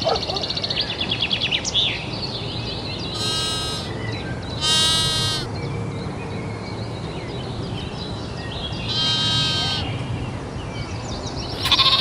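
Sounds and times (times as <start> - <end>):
sheep bleating: 3.1 - 3.9, 4.6 - 5.5, 8.9 - 9.9, 11.6 - 12.0.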